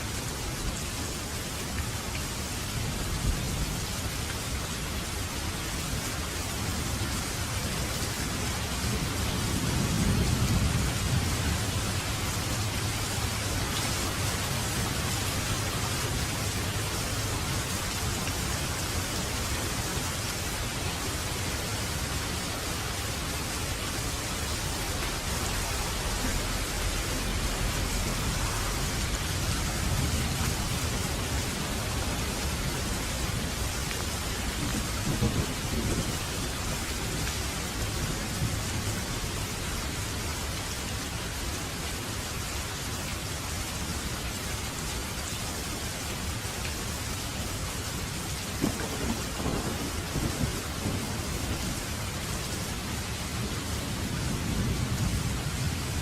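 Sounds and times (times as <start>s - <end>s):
steady rain falling: 0.0s - 56.0s
low rumble of thunder: 6.2s - 39.4s, 48.5s - 56.0s.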